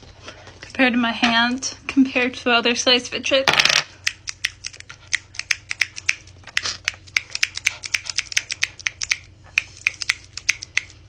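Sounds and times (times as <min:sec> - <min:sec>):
fidget toy clicking: 0:04.0 - 0:11.0.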